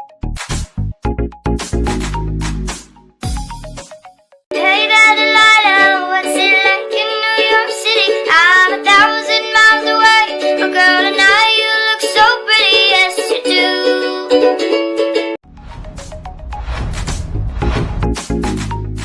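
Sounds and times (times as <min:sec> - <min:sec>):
high singing voice: 0:04.5 - 0:14.7.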